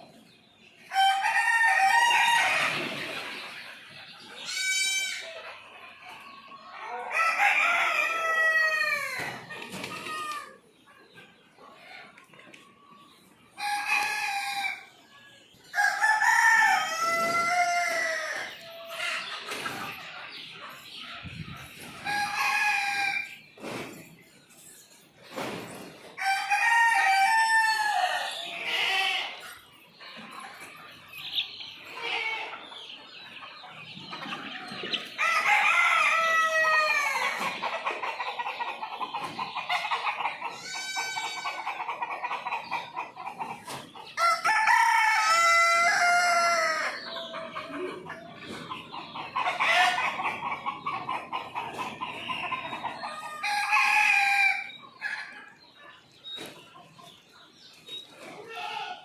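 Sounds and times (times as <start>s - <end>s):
chickens clucking: 0.0s - 59.0s
roosters crowing: 0.9s - 3.2s, 6.6s - 10.6s, 13.6s - 15.0s, 15.7s - 20.0s, 21.8s - 23.5s, 26.1s - 29.7s, 34.1s - 38.5s, 39.6s - 43.2s, 44.1s - 48.1s, 49.2s - 55.6s.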